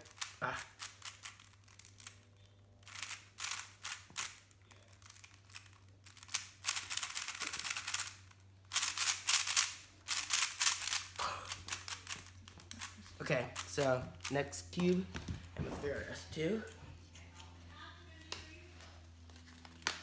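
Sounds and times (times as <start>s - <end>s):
puzzle cube clicking: 0.0s - 2.2s, 2.9s - 14.9s.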